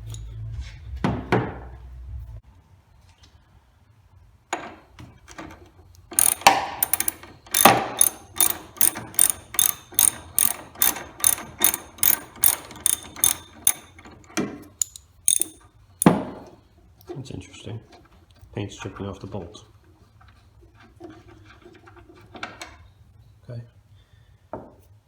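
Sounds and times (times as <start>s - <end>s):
socket ratchet clicking: 6.2s - 14.0s, 14.7s - 16.2s.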